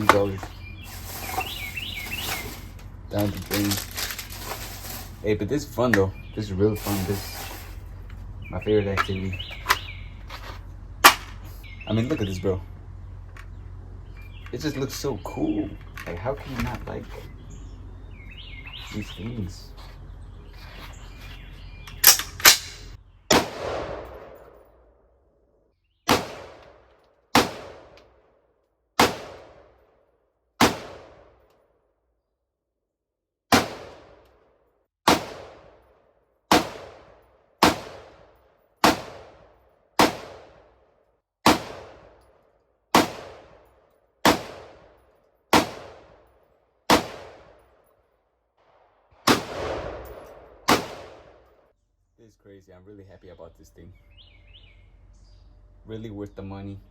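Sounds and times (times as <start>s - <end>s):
gunshots with echo: 22.0s - 24.5s, 26.1s - 26.8s, 27.4s - 28.0s, 29.0s - 29.8s, 30.6s - 31.4s, 33.5s - 34.2s, 35.1s - 35.8s, 36.5s - 40.7s, 41.4s - 42.2s, 43.0s - 43.6s, 44.2s - 46.3s, 46.9s - 47.6s, 48.6s - 51.5s.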